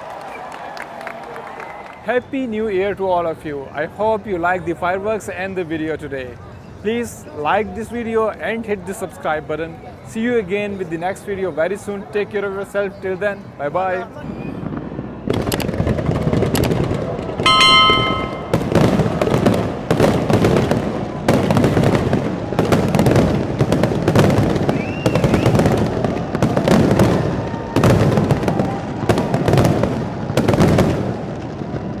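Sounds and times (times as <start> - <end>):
fireworks bangs with echo: 14.6 - 32.0
short ringing tone: 17.5 - 18.8.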